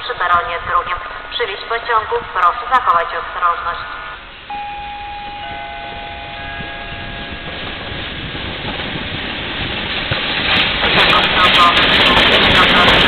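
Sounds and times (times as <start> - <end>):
train rumble: 0.0 - 13.0.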